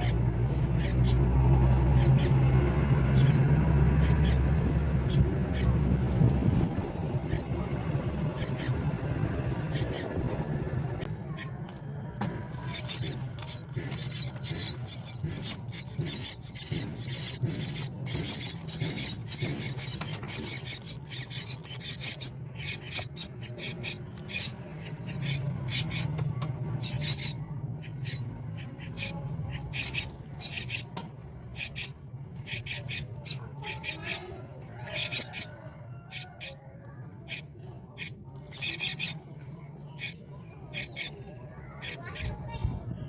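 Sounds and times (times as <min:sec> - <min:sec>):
nestlings raspy begging calls: 0:00.0 - 0:06.0, 0:07.1 - 0:10.5, 0:11.3 - 0:11.6, 0:12.6 - 0:30.9, 0:31.5 - 0:39.2, 0:39.9 - 0:42.6
steady low hum: 0:00.0 - 0:34.2.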